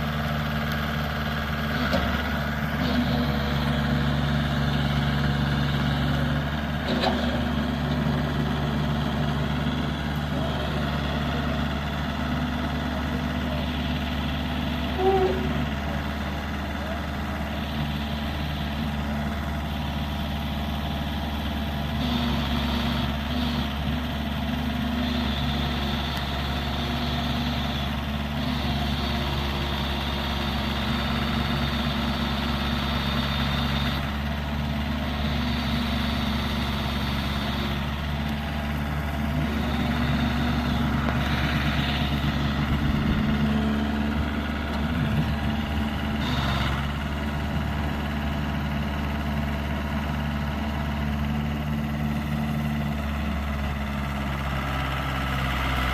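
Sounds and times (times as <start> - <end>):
diesel engine idling: 0.0 - 55.9.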